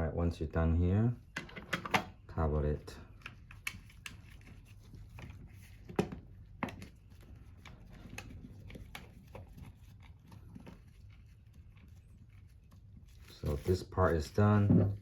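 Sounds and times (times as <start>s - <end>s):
clicks and knocks of pump parts: 1.3s - 2.2s, 3.1s - 10.9s.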